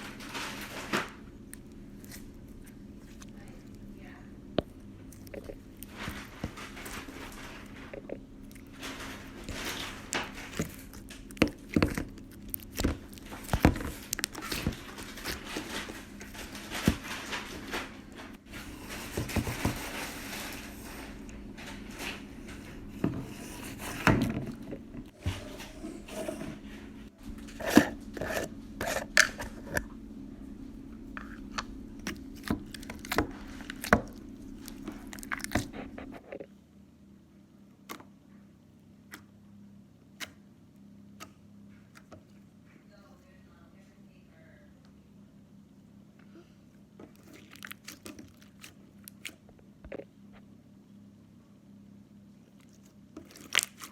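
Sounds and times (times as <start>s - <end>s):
faint steady hum: 0.0s - 53.9s
slime squelching and popping: 8.4s - 17.0s, 31.3s - 35.7s, 47.0s - 50.1s, 52.6s - 53.9s.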